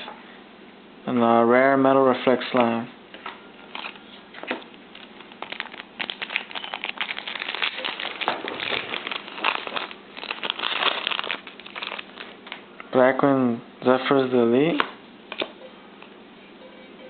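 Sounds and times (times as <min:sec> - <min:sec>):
foil wrapper crinkling: 0:03.7 - 0:04.0, 0:04.7 - 0:12.7.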